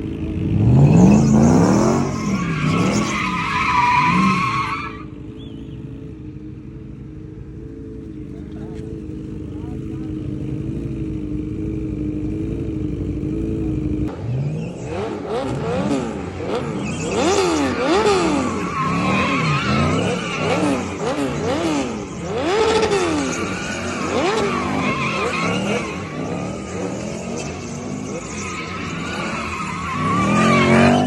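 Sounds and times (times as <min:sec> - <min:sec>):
car engine revving: 0:00.0 - 0:31.0
tyres squealing: 0:00.8 - 0:05.7, 0:16.5 - 0:31.0.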